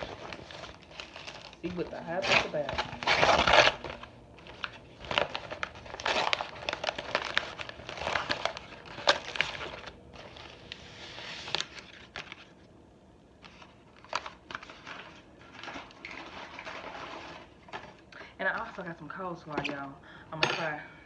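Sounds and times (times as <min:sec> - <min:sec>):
paper packaging crinkling: 0:00.0 - 0:12.7, 0:13.4 - 0:19.0.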